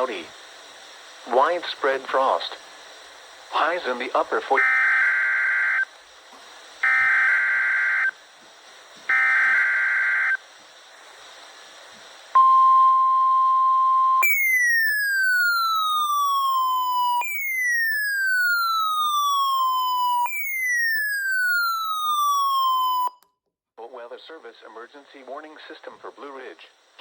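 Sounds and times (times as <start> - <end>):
steady single-pitch alarm tone: 4.6 - 5.9, 6.8 - 8.2, 9.1 - 10.4, 12.4 - 23.2
electronic siren falling sweeps: 14.1 - 23.2.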